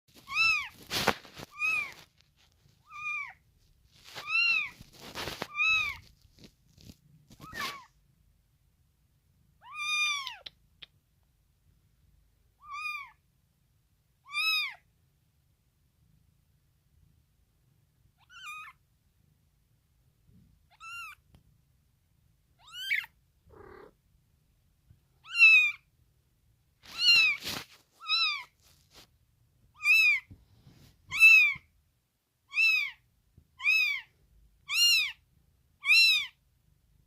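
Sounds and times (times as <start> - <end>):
kitten meowing: 0.2 - 0.8, 1.5 - 2.0, 2.8 - 3.4, 4.2 - 4.8, 5.5 - 6.0, 7.3 - 7.9, 9.6 - 10.5, 12.6 - 13.2, 14.2 - 14.8, 18.2 - 18.8, 20.7 - 21.2, 22.6 - 24.0, 25.2 - 25.8, 26.9 - 28.5, 29.7 - 30.3, 31.1 - 31.7, 32.5 - 33.0, 33.6 - 34.1, 34.7 - 35.2, 35.8 - 36.4.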